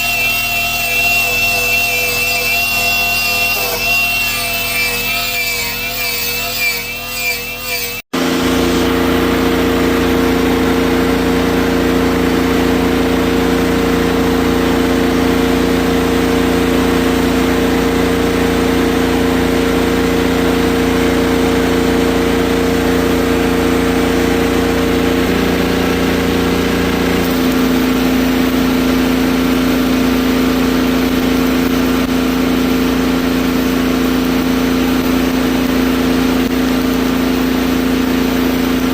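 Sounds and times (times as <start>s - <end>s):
wavering whine: 0.0s - 11.8s, 23.0s - 28.6s
diesel engine running: 8.2s - 38.8s.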